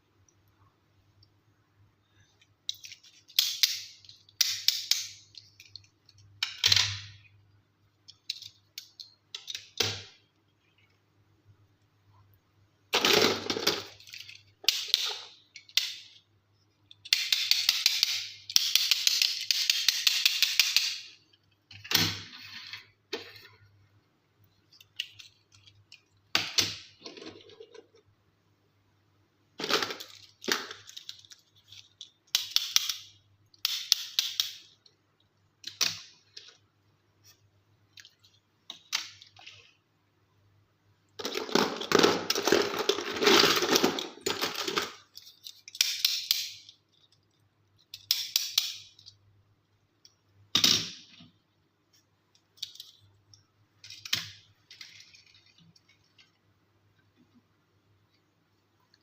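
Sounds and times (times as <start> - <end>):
small toys clicking and rattling: 2.4 - 7.3, 12.9 - 16.2, 16.8 - 21.8, 24.6 - 28.1, 29.6 - 35.0, 41.2 - 49.2, 52.4 - 56.4.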